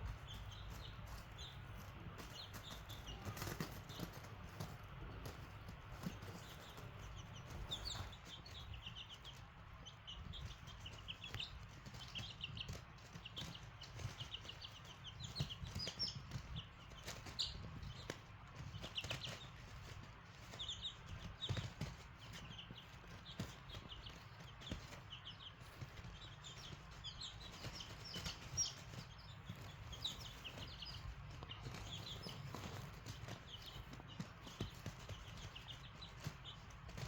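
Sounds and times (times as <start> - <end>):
beaks pecking at food: 0.0 - 37.0
chicks peeping: 0.0 - 37.0.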